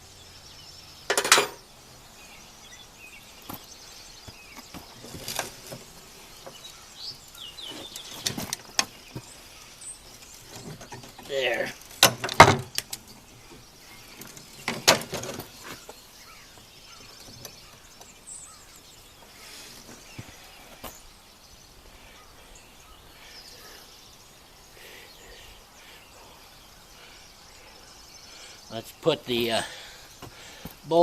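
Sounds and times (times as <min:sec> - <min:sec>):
outdoor background: 0:00.0 - 0:31.0
metal tools clanking: 0:01.1 - 0:01.6
faint bird chirps: 0:13.0 - 0:31.0.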